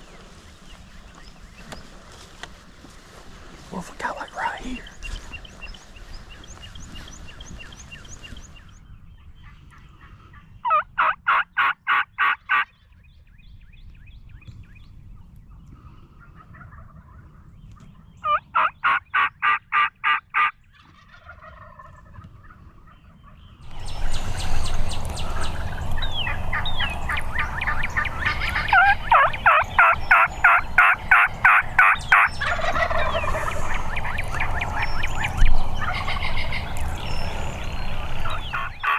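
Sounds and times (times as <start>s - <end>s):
background noise: 0.0s - 21.5s, 22.1s - 38.9s
turkey yelping: 23.7s - 38.9s.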